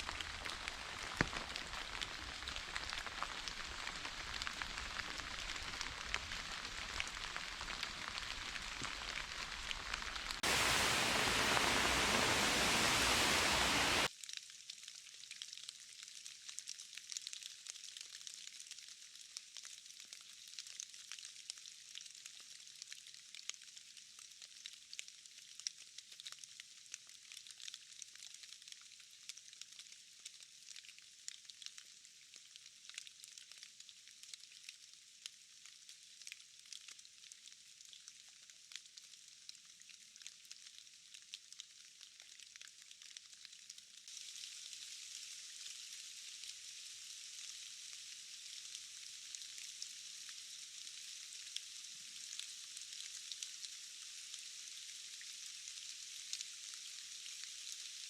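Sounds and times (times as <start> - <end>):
rain hissing: 0.0 - 14.1
single raindrops ticking: 0.0 - 14.1.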